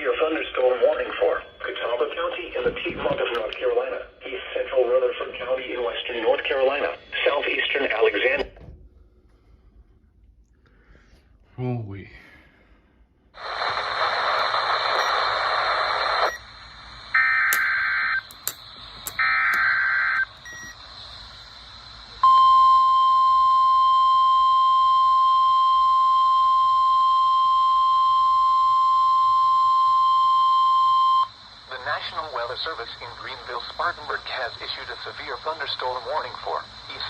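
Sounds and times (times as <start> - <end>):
radio hiss: 0.0 - 8.5, 13.4 - 22.5, 29.2 - 37.0
steady warning alarm tone: 22.1 - 36.2.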